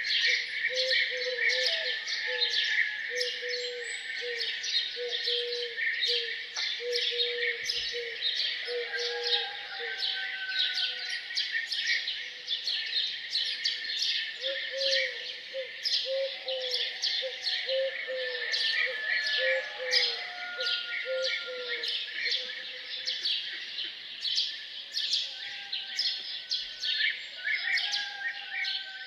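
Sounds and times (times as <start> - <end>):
pigeon cooing: 14.5 - 16.9, 17.6 - 21.8.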